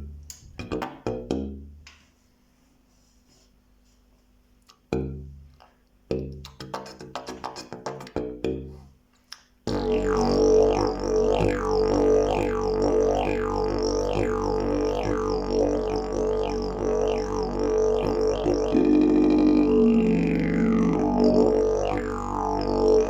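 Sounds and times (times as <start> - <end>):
didgeridoo drone: 9.7 - 23.0
higher didgeridoo tone: 9.7 - 23.0.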